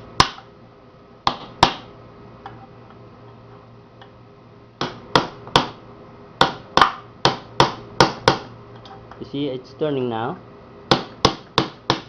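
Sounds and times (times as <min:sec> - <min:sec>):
hammer striking chisel: 0:06.4 - 0:08.5, 0:10.9 - 0:12.0.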